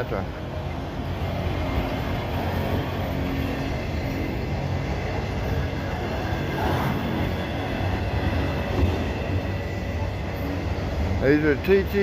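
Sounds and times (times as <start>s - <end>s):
freight train wheels rumbling on rails: 0.0s - 12.0s.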